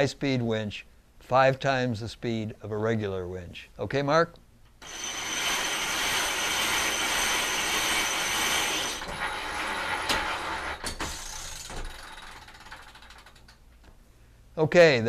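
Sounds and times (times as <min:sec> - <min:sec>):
winch ratcheting: 0:04.8 - 0:13.6
winch clicks: 0:09.9 - 0:13.6.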